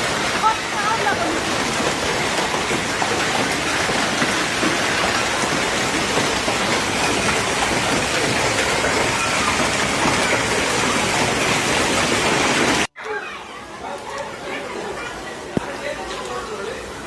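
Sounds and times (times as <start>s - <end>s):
heavy rain pouring: 0.0s - 17.0s.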